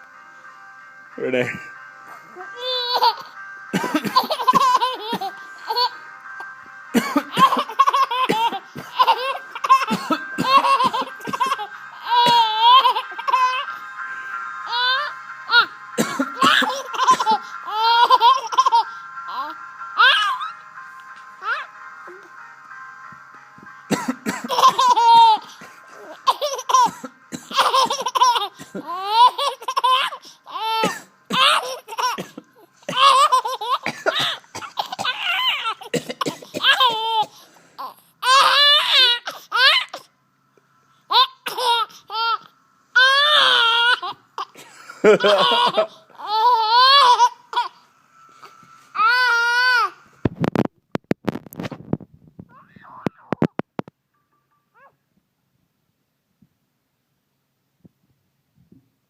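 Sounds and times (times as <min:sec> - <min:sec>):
baby laughing: 0:02.4 - 0:06.0, 0:07.0 - 0:13.8, 0:14.6 - 0:20.6, 0:21.4 - 0:21.7, 0:24.0 - 0:40.0, 0:41.1 - 0:47.8.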